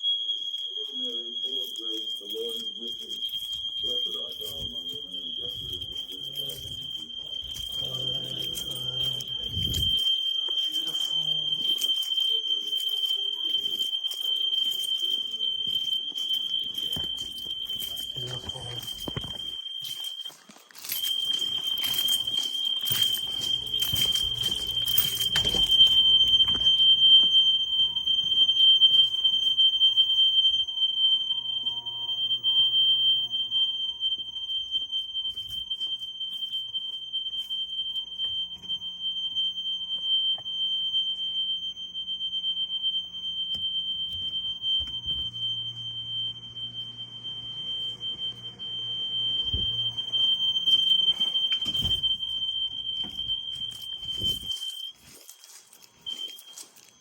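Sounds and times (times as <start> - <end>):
fire alarm high-pitched tone: 0.0 - 57.0.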